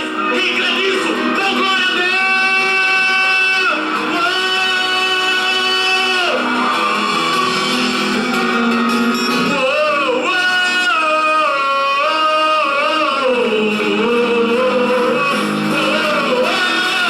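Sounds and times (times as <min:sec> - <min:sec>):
instrumental accompaniment: 0:00.0 - 0:17.0
person singing long notes: 0:09.4 - 0:17.0.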